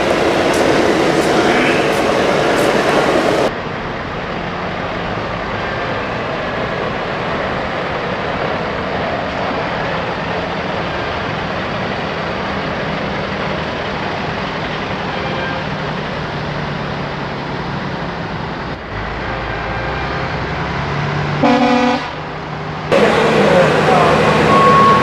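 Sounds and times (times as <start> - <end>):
hall background noise: 0.0 - 3.5, 22.9 - 25.0
simulated truck diesel engines: 0.0 - 15.1, 15.8 - 25.0.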